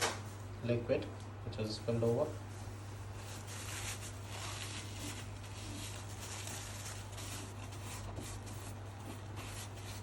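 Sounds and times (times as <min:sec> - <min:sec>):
low electrical hum: 0:00.0 - 0:10.0
cloth rubbing: 0:02.4 - 0:10.0.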